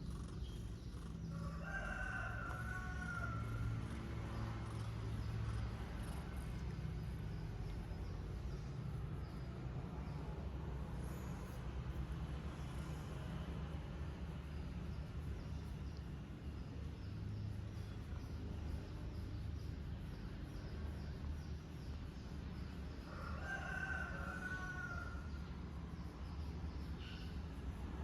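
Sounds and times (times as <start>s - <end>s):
low steady rumble: 0.0s - 23.4s.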